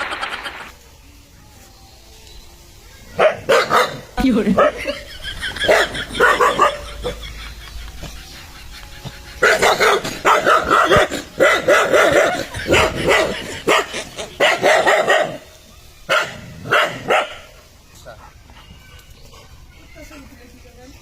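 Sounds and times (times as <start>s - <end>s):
dog barking angrily: 3.2s - 4.8s, 5.6s - 7.2s, 9.4s - 15.5s, 16.1s - 17.5s.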